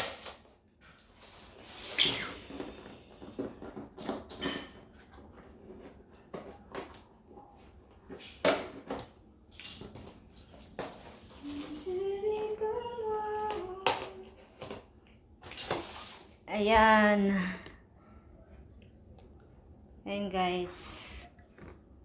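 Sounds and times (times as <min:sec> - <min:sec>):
woman singing: 0:11.4 - 0:14.4.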